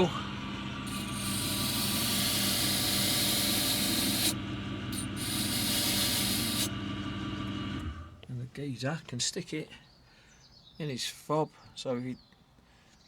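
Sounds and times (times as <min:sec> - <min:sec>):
wheel motor hum: 0:00.0 - 0:08.2
metal rasping on finishing wheel: 0:00.8 - 0:06.8.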